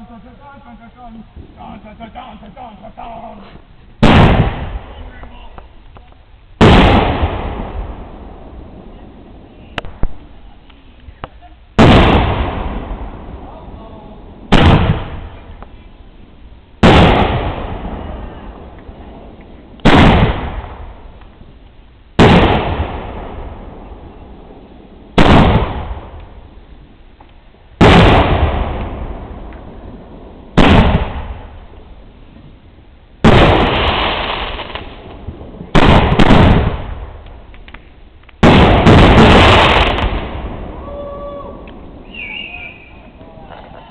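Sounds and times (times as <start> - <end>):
fireworks exploding: 0.0 - 43.9.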